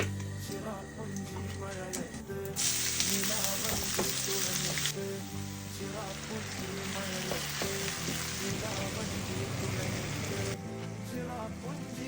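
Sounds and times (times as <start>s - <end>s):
food sizzling in a pan: 2.6s - 10.6s.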